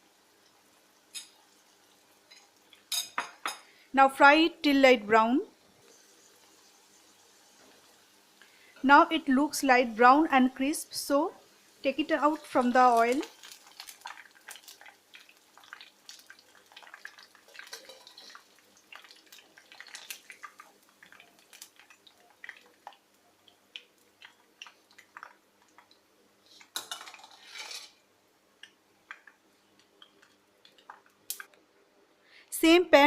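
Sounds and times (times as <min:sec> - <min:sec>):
metal utensil scraping frying pan: 0:26.8 - 0:28.0.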